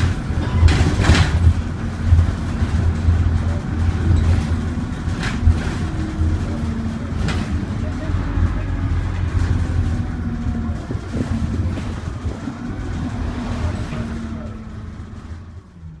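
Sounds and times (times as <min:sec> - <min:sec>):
bus diesel engine running: 0:00.0 - 0:16.0.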